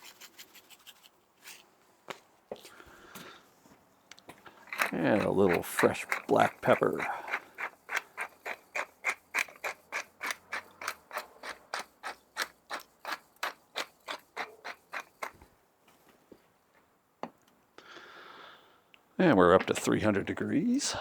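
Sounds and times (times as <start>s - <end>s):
pepper mill grinding: 4.4s - 15.4s.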